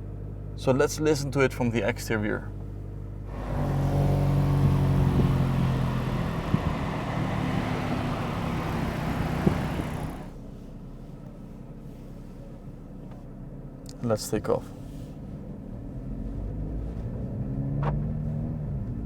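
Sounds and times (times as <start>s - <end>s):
car engine idling: 2.5s - 15.8s
sharp exhaust cracks: 3.3s - 10.4s.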